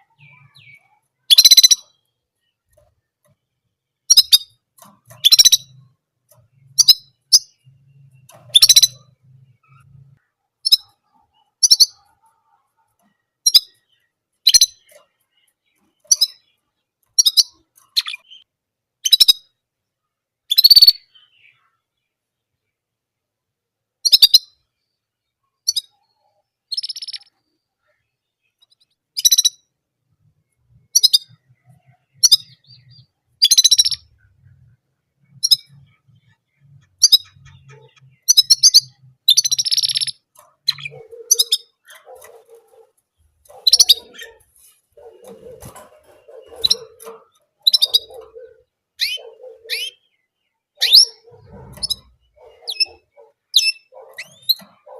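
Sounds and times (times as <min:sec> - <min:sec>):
canary singing trills: 0:00.0 - 0:19.6, 0:20.4 - 0:22.7, 0:24.0 - 0:54.9.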